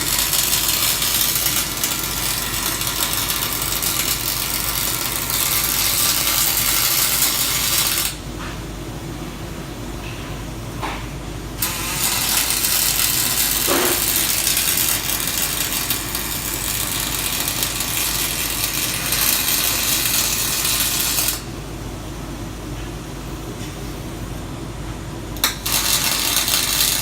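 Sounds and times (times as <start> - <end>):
welding arc hissing: 0.0 - 8.2, 11.6 - 21.6, 25.4 - 27.0
low machine hum: 0.0 - 27.0.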